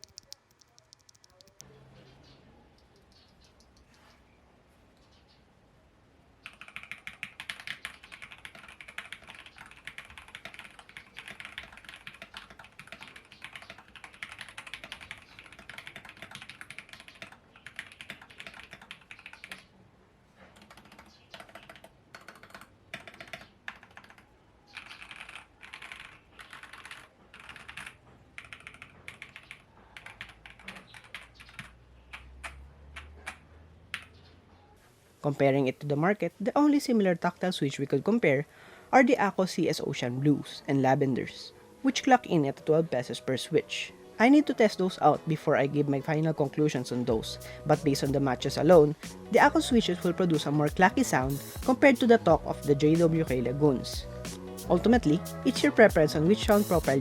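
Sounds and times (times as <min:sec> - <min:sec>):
mechanical keyboard typing: 0:00.0 - 0:01.6, 0:06.4 - 0:19.7, 0:20.5 - 0:34.1.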